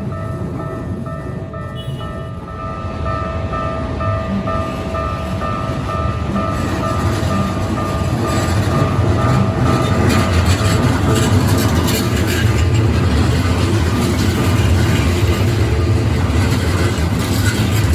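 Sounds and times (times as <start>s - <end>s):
level crossing warning bell: 0.0s - 17.9s
train rumble and wheel noise: 0.0s - 17.9s.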